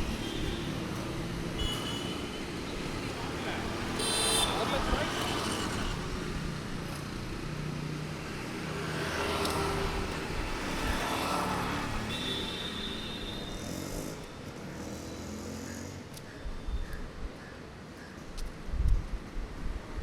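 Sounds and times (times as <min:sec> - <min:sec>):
vehicle engines passing: 0:02.3 - 0:12.2, 0:13.4 - 0:16.2.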